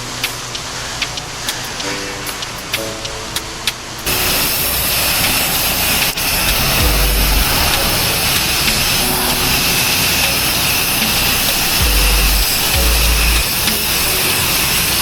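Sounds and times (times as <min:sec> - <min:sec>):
pressure washer spraying water: 0:03.9 - 0:15.0.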